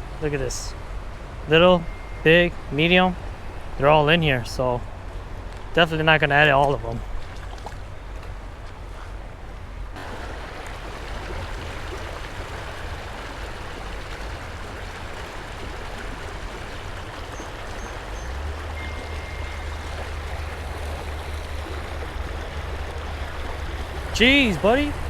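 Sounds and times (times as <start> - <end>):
creek water running: 0.0 - 25.0.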